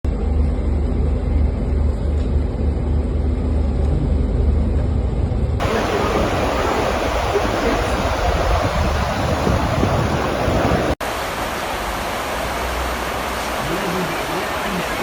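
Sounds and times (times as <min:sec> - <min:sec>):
floodwater rushing: 0:05.6 - 0:15.0.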